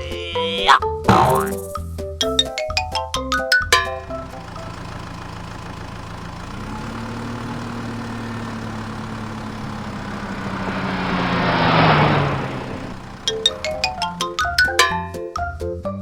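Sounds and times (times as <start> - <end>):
vehicle engine humming: 1.1 - 15.6
rushing noise: 9.6 - 14.6.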